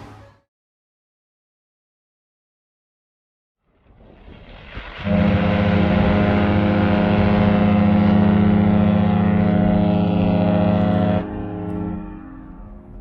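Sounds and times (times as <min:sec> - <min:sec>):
deep ship horn blast: 0:05.0 - 0:13.0.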